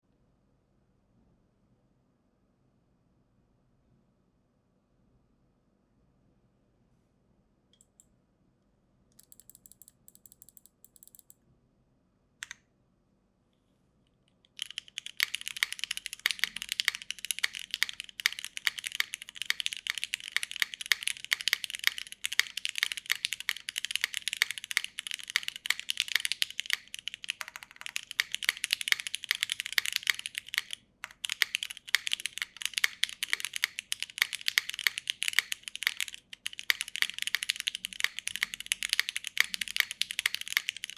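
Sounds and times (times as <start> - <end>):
mechanical keyboard typing: 9.2 - 11.4, 14.5 - 40.9.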